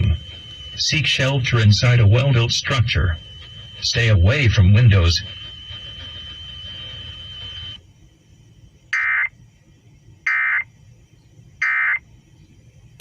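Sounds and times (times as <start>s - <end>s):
buzzy data bursts: 0.0s - 7.8s.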